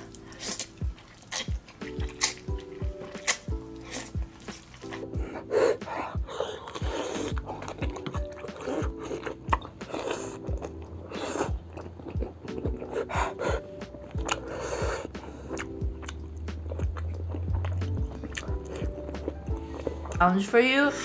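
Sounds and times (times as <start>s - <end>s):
background music with steady beat: 0.0s - 21.0s
chewing and crunching food: 0.0s - 21.0s.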